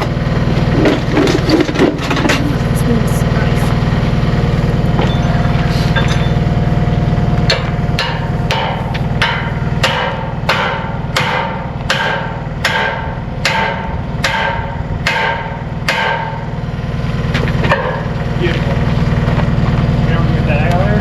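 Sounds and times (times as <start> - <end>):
engine running: 0.0 - 21.0
hammer striking metal wedge: 7.5 - 16.5.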